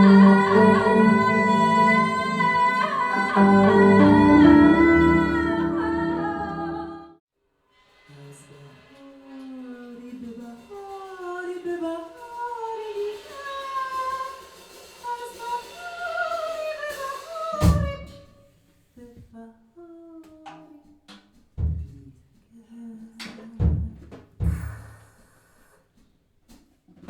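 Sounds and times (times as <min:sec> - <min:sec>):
sustained sliding tones: 0:00.0 - 0:07.2
wordless singing: 0:00.0 - 0:07.2
deep drum hit: 0:23.6 - 0:25.0.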